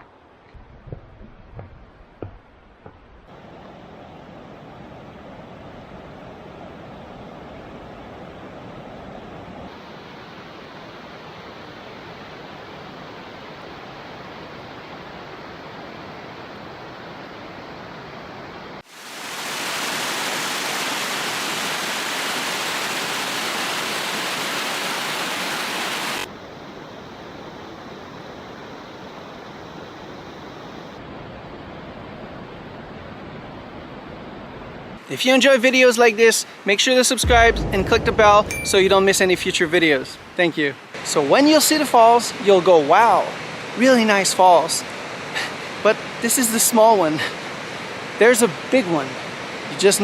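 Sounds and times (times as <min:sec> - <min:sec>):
river rapids and waterfall rushing: 0:18.8 - 0:26.3.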